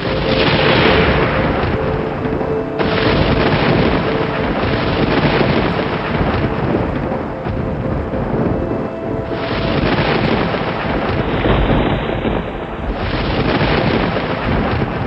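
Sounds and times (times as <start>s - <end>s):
faint sustained musical tones: 0.0s - 15.0s
thunder crack: 0.0s - 15.0s
thunder rumbling: 0.0s - 15.0s.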